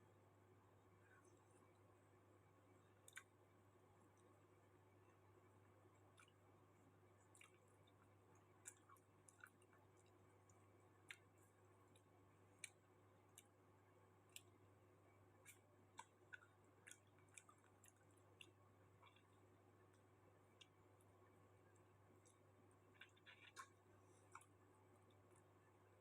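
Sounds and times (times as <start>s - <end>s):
low steady hum: 0.0s - 26.0s
mouth clicks and wet chewing smacks: 2.8s - 3.3s, 7.2s - 13.6s, 15.4s - 20.8s, 21.7s - 25.5s.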